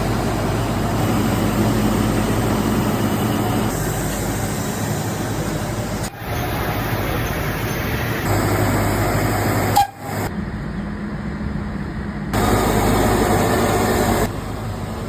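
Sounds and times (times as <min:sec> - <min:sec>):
low engine hum: 0:00.0 - 0:15.0
vehicle noise: 0:00.0 - 0:15.0.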